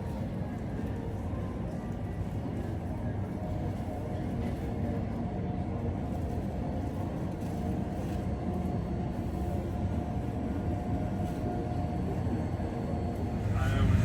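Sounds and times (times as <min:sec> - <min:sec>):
jet engines rumbling in cabin: 0:09.1 - 0:14.0.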